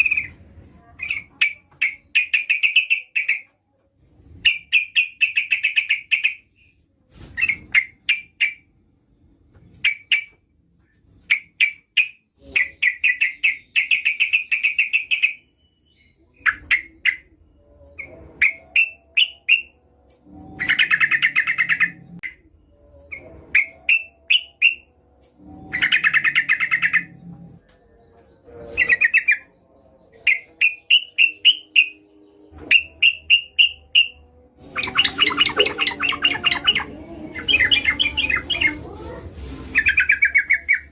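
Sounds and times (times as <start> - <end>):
bird chattering calls: 34.7 - 38.8.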